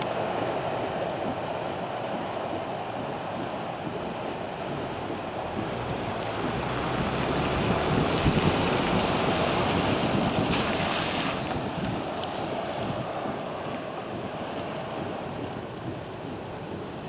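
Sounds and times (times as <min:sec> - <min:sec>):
gusty wind buffeting microphone: 0:00.0 - 0:17.0
low thumps: 0:00.8 - 0:17.0.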